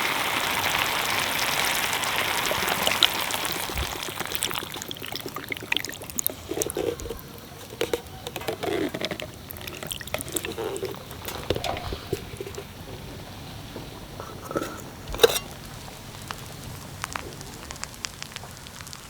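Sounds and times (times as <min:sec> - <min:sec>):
soft liquid sounds: 0:00.0 - 0:19.0
utensils clicking and tapping: 0:03.7 - 0:12.8.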